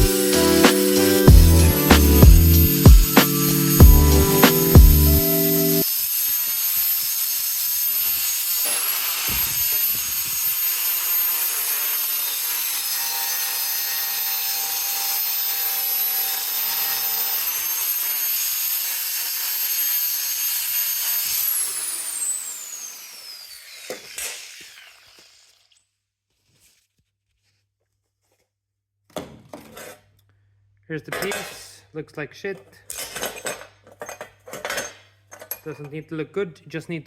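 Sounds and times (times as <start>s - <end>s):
angle grinder on steel plate: 0.0s - 25.9s.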